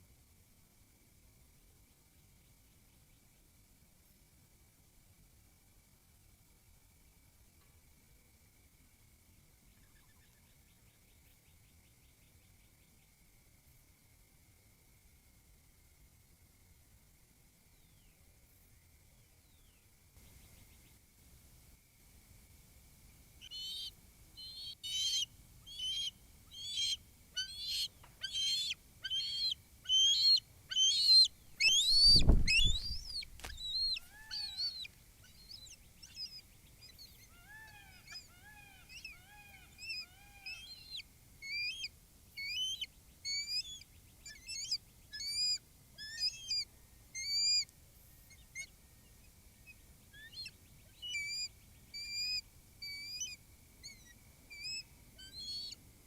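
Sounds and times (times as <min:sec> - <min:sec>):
eagle piping chirps: 0:23.4 - 0:47.7, 0:48.3 - 0:48.8, 0:49.6 - 0:55.8.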